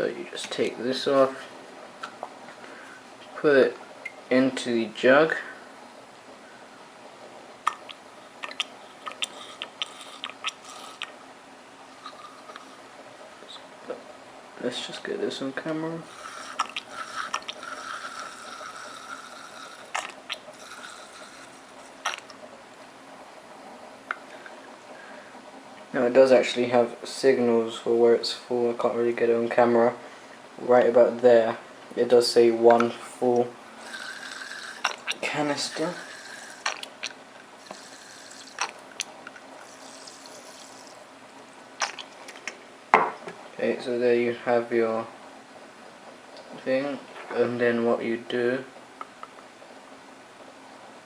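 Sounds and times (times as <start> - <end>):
lighter fluid trickling: 7.7 - 11.2, 16.0 - 22.4, 33.4 - 41.0
faint hiss: 24.2 - 41.1.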